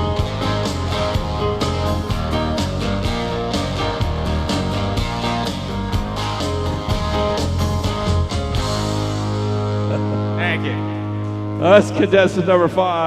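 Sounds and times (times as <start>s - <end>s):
rock backing music with guitar: 0.0s - 11.8s.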